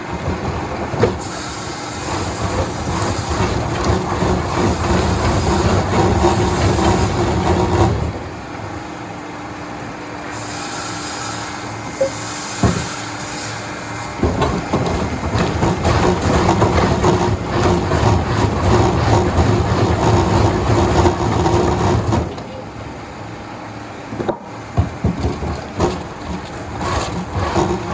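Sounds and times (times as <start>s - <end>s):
sawmill machinery running: 0.0s - 27.9s
sharp knocks: 24.1s - 27.7s.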